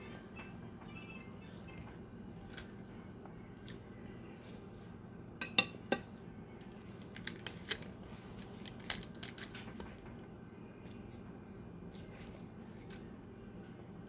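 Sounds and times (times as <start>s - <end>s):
faint room hum: 0.0s - 14.0s
tableware clicking and clinking: 5.4s - 6.1s.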